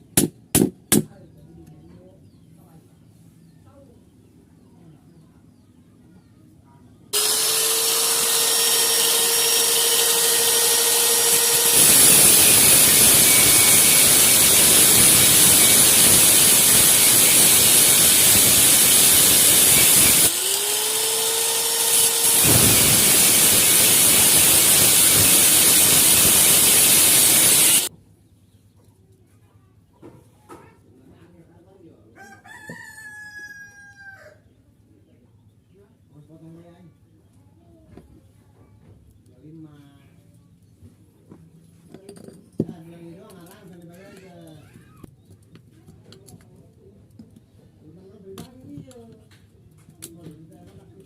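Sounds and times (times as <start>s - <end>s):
electric power tool motor whine: 7.2s - 27.9s
power tool rough working noise: 7.2s - 27.9s.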